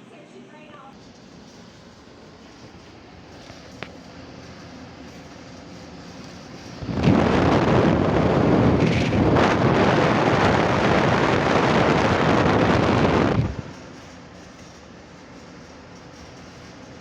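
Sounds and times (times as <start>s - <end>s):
portable air conditioner running: 0.0s - 17.0s
air blowing onto microphone: 6.8s - 13.7s.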